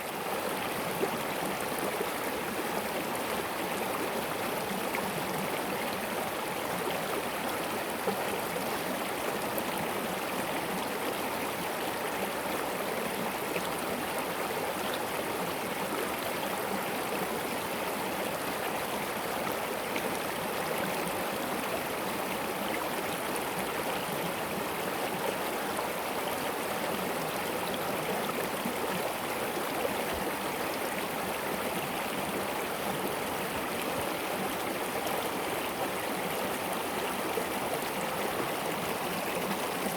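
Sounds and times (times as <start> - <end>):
stream rushing over stones: 16.9 - 39.9.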